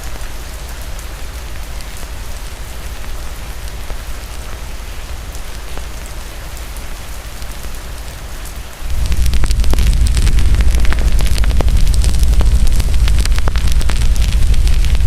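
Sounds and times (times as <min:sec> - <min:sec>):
steady rain hiss: 0:00.0 - 0:15.0
low rumble: 0:08.9 - 0:15.0.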